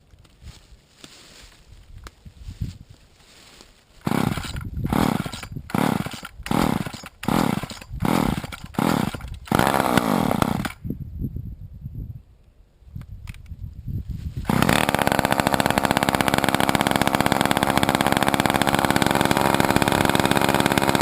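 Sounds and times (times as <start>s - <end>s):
chainsaw idling and revving: 4.0s - 10.8s, 14.4s - 21.0s.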